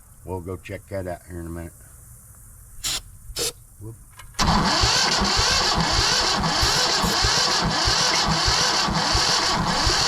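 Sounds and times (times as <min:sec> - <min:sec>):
tractor diesel engine running: 0:04.4 - 0:10.0.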